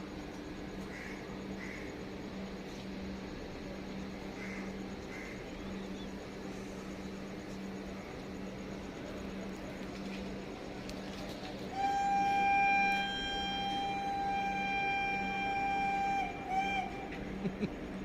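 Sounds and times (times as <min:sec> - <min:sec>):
steady low hum: 0:00.0 - 0:18.0
train horn blast: 0:11.7 - 0:17.4.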